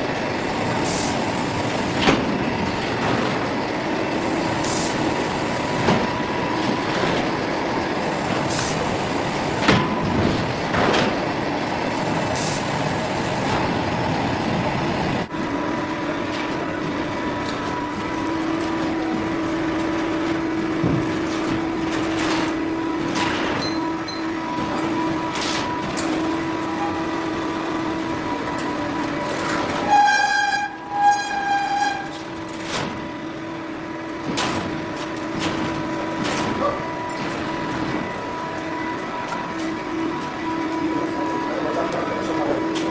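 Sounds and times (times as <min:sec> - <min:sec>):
mechanical din with hum: 0:00.4 - 0:11.4, 0:15.3 - 0:40.9
loud horn blasts: 0:29.8 - 0:32.2.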